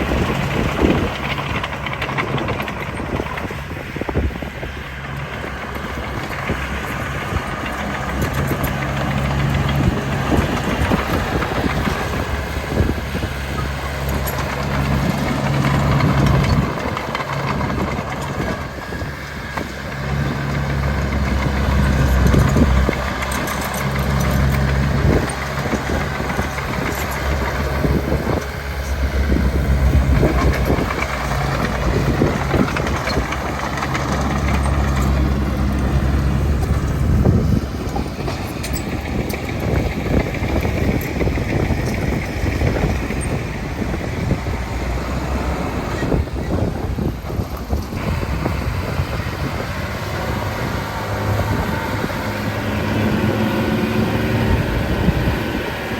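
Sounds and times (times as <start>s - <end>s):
heavy diesel machinery engine: 0.0s - 55.9s.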